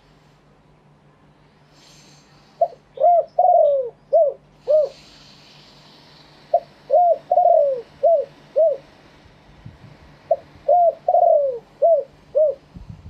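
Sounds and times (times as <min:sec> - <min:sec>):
dove cooing: 0:02.6 - 0:05.1, 0:06.5 - 0:09.0, 0:10.3 - 0:12.8.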